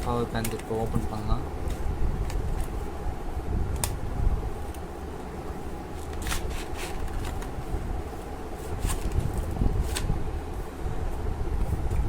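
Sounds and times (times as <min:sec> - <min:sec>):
steady low hum: 0:00.0 - 0:12.0
box scraping and rustling: 0:06.2 - 0:07.5.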